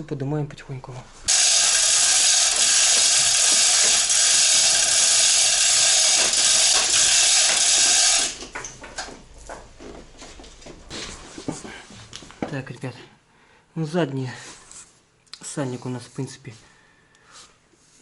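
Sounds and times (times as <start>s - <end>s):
powered hoist running: 1.3s - 9.2s.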